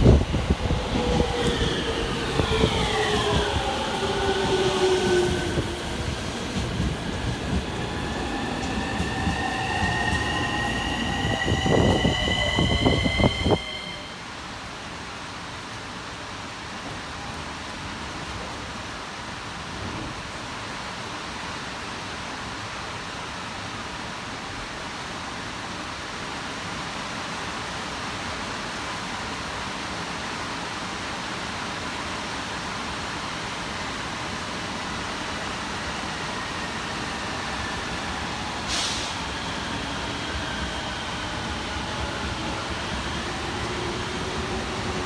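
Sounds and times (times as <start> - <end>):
train rushing past: 0.0 - 14.7, 34.6 - 45.0.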